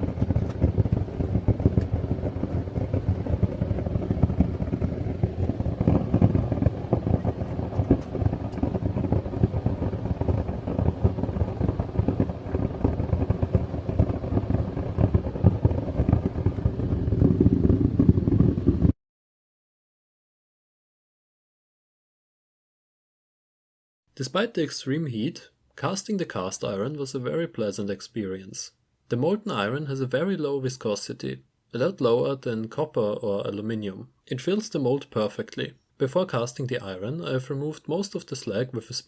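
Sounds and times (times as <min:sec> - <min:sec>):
furnace burner rumbling: 0:00.0 - 0:19.0.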